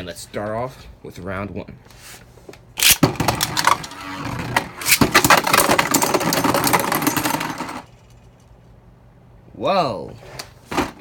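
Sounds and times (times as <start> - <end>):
spinning tops whirring and clacking: 2.8 - 8.5.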